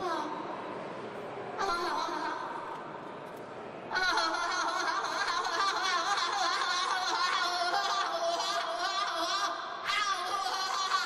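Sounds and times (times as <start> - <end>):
high-pitched voice cackling: 1.6 - 2.5, 3.9 - 11.0.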